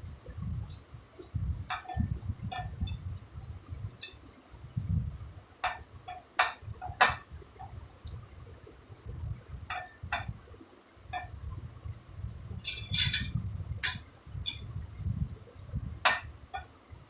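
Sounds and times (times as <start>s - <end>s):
utensil clicks and clinks: 12.6s - 14.6s.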